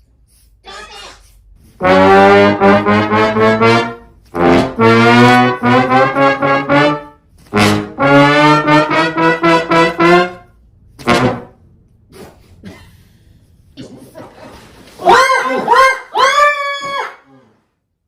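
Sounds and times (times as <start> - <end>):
brass instrument quick notes: 1.8 - 11.6.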